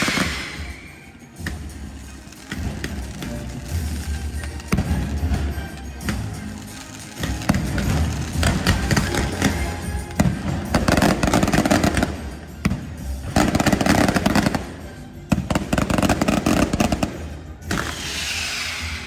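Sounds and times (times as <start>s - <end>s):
hissing rush: 0.0s - 1.1s, 17.7s - 19.0s
fireworks crackling and banging: 0.0s - 19.0s
music: 0.0s - 19.0s.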